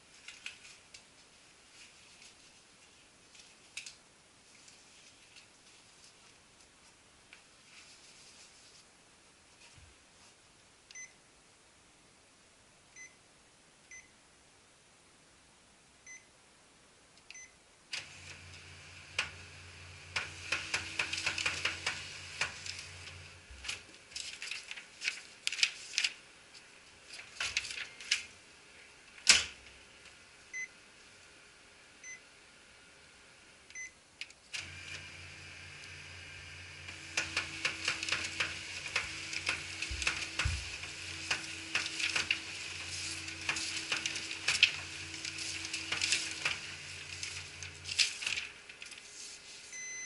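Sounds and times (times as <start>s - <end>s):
copier motor humming and clicking: 17.9s - 28.3s, 34.5s - 49.1s
faint short beeps: 49.7s - 50.0s.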